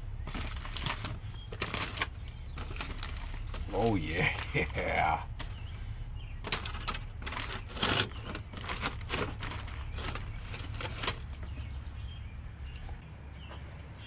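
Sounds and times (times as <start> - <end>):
aluminium foil crinkling: 0.2 - 5.6, 6.4 - 11.7.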